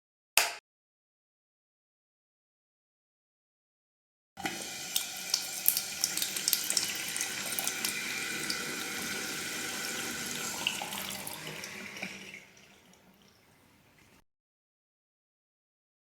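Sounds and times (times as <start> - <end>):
tap water running into sink: 4.4 - 14.2.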